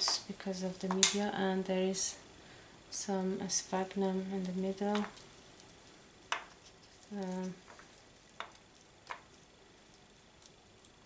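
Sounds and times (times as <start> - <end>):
bark crackling and rustling: 4.3 - 11.0.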